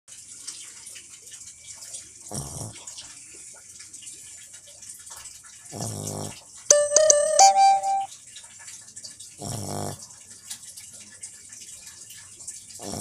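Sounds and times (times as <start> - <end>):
low buzzing snores: 2.3 - 2.8, 5.8 - 6.4, 9.4 - 10.0, 12.8 - 13.0.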